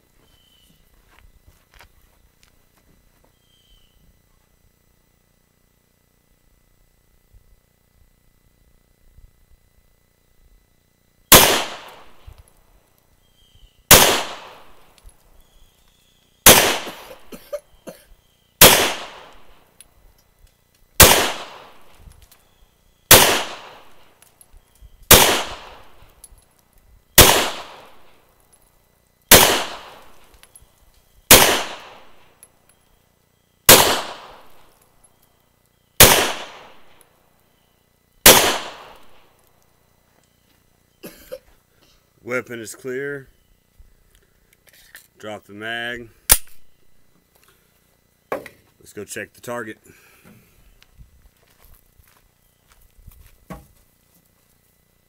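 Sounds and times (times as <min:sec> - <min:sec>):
pistol shots with echo: 0:11.3 - 0:12.3, 0:13.9 - 0:14.9, 0:16.4 - 0:17.4, 0:18.6 - 0:19.6, 0:21.0 - 0:22.0, 0:23.1 - 0:24.1, 0:25.1 - 0:26.1, 0:27.2 - 0:28.2, 0:29.3 - 0:30.3, 0:31.3 - 0:32.4, 0:33.7 - 0:34.8, 0:36.0 - 0:37.0, 0:38.3 - 0:39.3.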